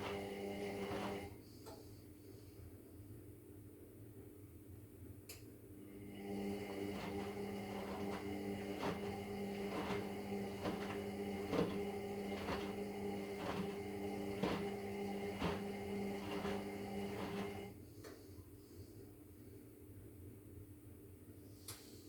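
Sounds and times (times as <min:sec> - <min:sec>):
washing machine motor humming: 0:00.0 - 0:01.4, 0:05.8 - 0:17.8
washing machine drum knocking: 0:06.4 - 0:17.7.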